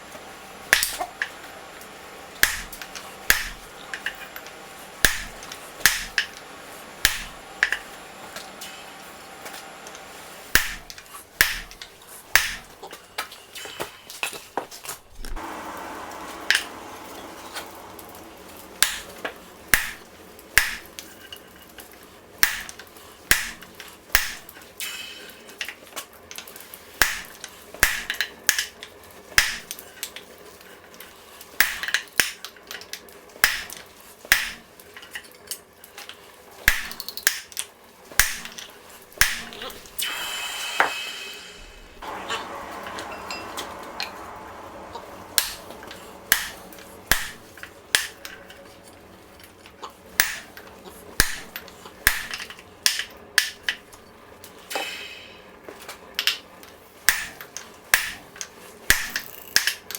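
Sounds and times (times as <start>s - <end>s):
hammer striking steel on anvil: 2.4s - 6.4s, 7.0s - 7.9s, 10.5s - 12.8s, 18.8s - 20.0s, 20.6s - 21.0s, 22.4s - 25.5s, 27.0s - 28.7s, 29.4s - 29.7s, 33.4s - 34.6s, 36.7s - 37.5s, 38.2s - 38.6s, 39.2s - 48.6s, 50.2s - 50.6s, 51.2s - 53.9s, 54.7s - 55.5s, 57.1s - 58.2s, 58.9s - 59.7s.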